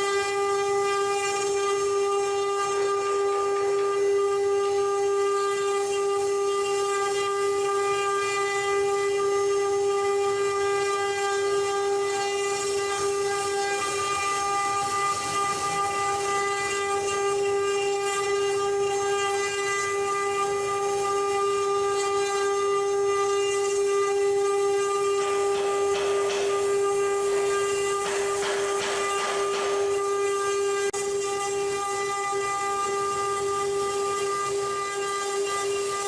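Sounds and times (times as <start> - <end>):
router spindle motor whining: 0.0 - 36.0.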